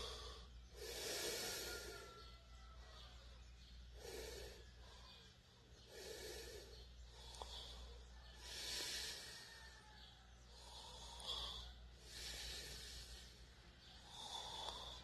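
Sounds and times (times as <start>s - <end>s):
person snoring: 0.0s - 2.2s, 5.9s - 9.8s, 10.5s - 13.3s, 14.0s - 15.0s
steady low hum: 0.0s - 15.0s.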